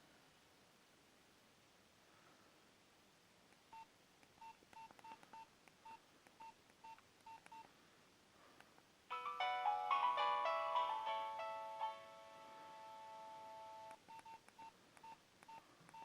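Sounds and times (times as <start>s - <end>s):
keypad beeps: 13.8s - 16.0s.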